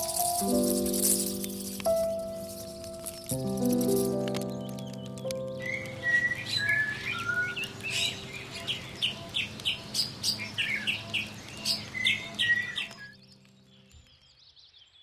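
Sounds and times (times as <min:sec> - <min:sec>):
bird chirping and whistling: 0:05.6 - 0:13.2.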